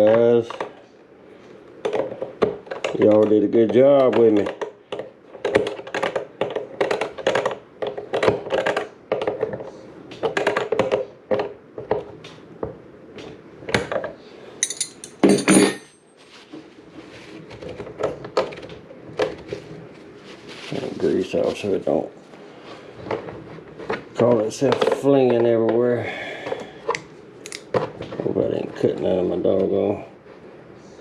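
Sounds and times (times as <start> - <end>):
tools clattering on workbench: 13.8 - 16.1.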